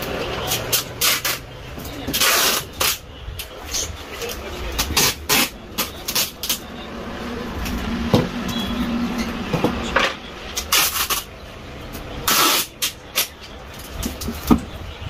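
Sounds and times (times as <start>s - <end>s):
packing tape ripping: 0.5s - 1.4s, 2.1s - 3.0s, 4.8s - 6.6s, 10.6s - 11.3s, 12.2s - 13.3s.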